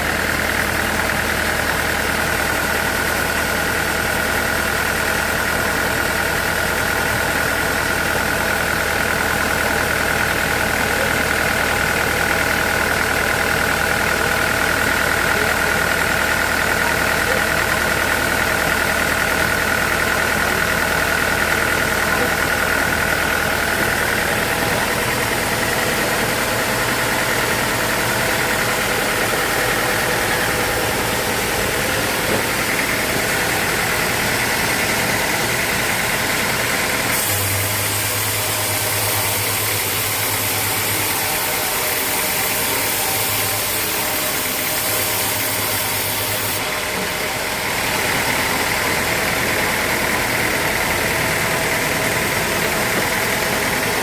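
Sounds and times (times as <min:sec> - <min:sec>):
sawmill machinery running: 0:00.0 - 0:54.0.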